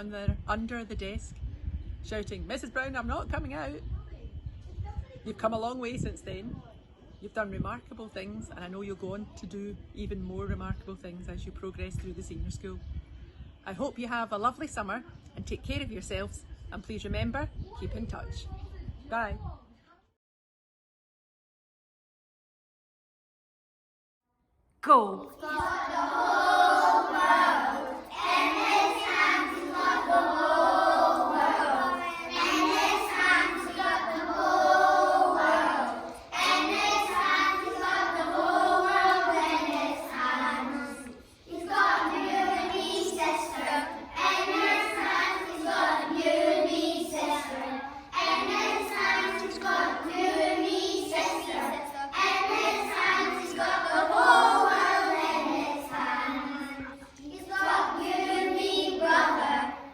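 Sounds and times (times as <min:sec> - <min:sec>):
children singing: 0:25.4 - 0:59.9.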